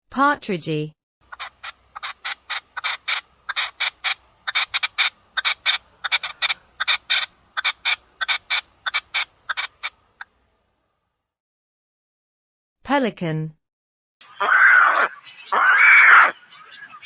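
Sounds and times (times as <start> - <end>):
partridge rasping calls: 1.2 - 10.3, 14.2 - 17.0.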